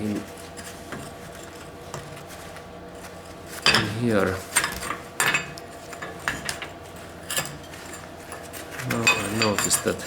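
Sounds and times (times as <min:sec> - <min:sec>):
metal parts clinking: 0:08.8 - 0:10.0.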